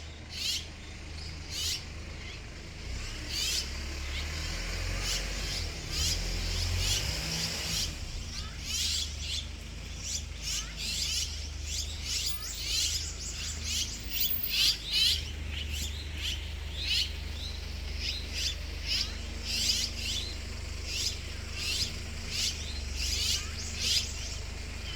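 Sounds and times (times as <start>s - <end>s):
small birds chirping: 0.0s - 24.9s
low steady rumble: 8.0s - 24.9s.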